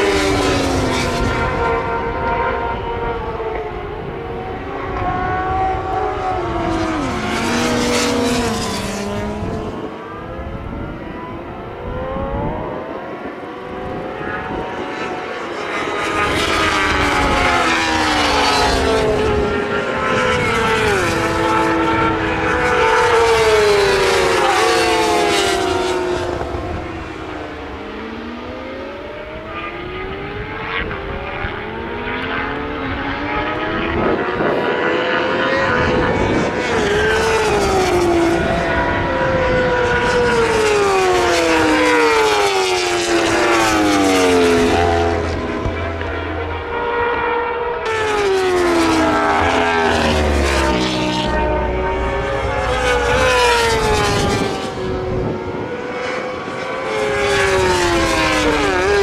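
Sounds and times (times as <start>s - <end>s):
racing motorcycles passing: 0.0s - 59.0s.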